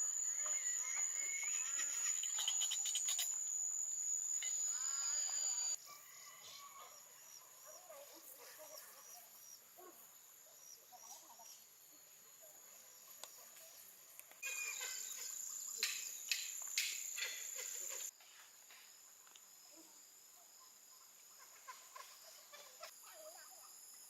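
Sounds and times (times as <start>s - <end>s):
small repeated chirps: 0.0s - 5.8s, 14.4s - 18.0s
insects trilling: 0.0s - 18.1s
loud clicky insect sounds: 0.0s - 24.0s.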